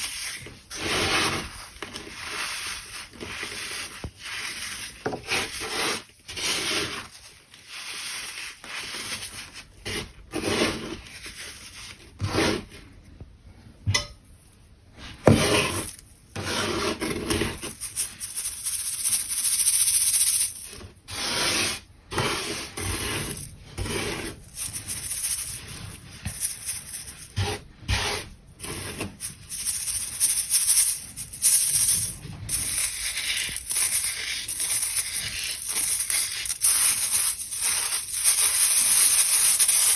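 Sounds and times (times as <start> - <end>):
baking soda crunching: 0.0 - 12.9, 21.1 - 39.9.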